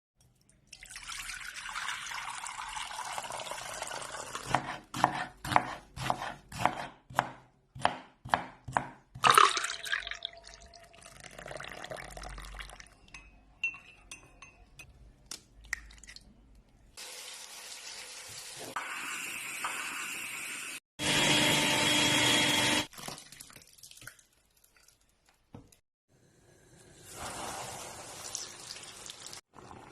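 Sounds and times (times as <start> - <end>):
knife chopping: 4.4 - 9.2
hiss like running water: 27.1 - 28.7.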